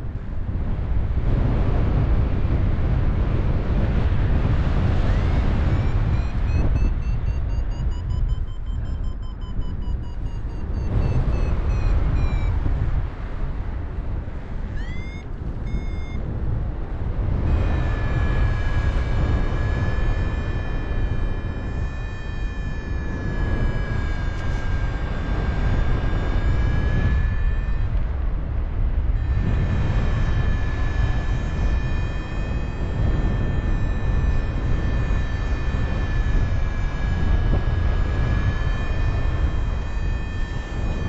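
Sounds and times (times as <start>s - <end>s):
variometer long steady tone: 0.0s - 41.0s
wind rushing over microphone: 0.0s - 41.0s
variometer beeps: 4.9s - 12.8s, 14.7s - 16.3s, 17.4s - 28.0s.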